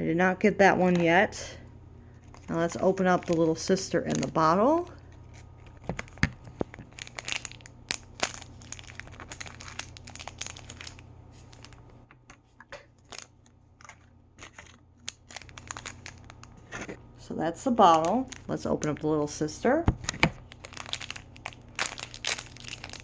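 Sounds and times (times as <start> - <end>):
packaging crinkling and tearing: 2.2 - 12.0, 12.7 - 17.0, 17.8 - 19.0, 19.9 - 23.0.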